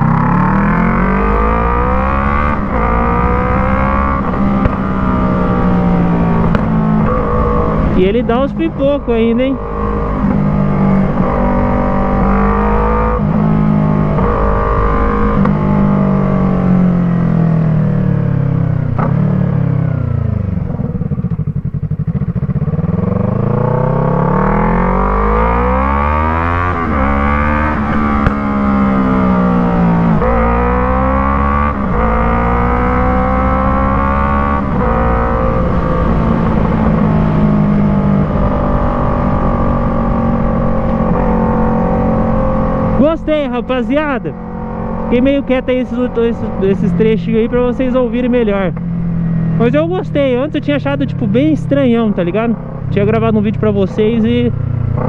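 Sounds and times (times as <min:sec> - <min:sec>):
motorcycle engine revving: 0:00.0 - 0:55.0
exhaust pop: 0:04.3 - 0:04.9, 0:06.4 - 0:07.3, 0:18.9 - 0:19.3, 0:27.8 - 0:28.7.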